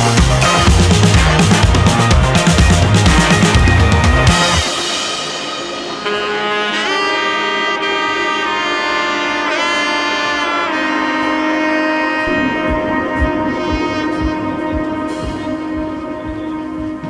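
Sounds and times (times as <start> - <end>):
heavy low beat: 0.0 - 6.2, 12.2 - 17.0
melody of long held notes: 0.0 - 17.0.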